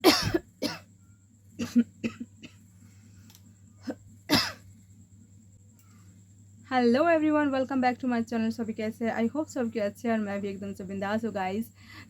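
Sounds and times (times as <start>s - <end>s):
woman coughing: 0.0s - 0.9s, 1.6s - 2.6s, 3.8s - 4.6s.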